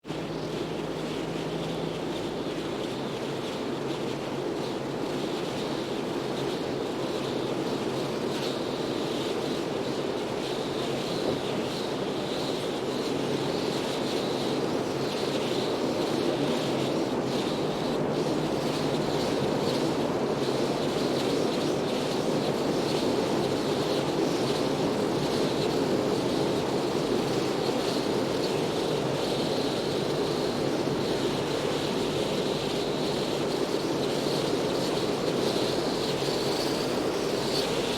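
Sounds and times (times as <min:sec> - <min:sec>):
wind gusts hissing: 0:08.6 - 0:37.9.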